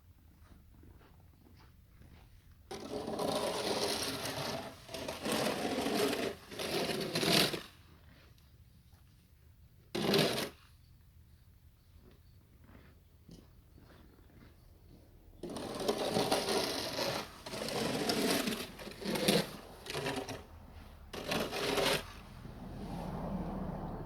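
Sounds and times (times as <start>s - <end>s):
snow scraping: 2.7s - 7.8s, 15.4s - 24.0s.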